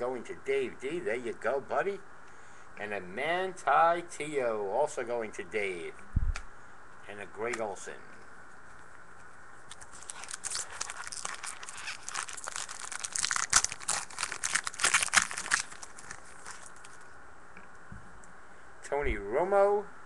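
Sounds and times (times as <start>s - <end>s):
wrapper tearing and crinkling: 9.7s - 17.0s.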